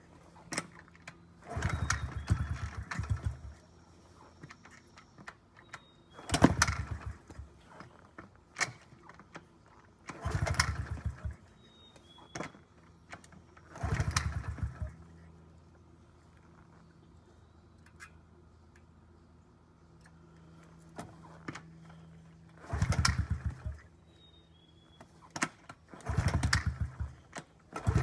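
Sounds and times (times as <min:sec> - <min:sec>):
small engine kick-started: 0:00.3 - 0:09.4, 0:10.0 - 0:15.2, 0:20.9 - 0:28.0.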